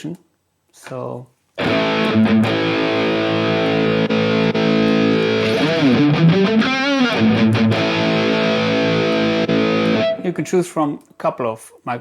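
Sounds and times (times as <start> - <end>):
distorted electric guitar: 1.6 - 10.2.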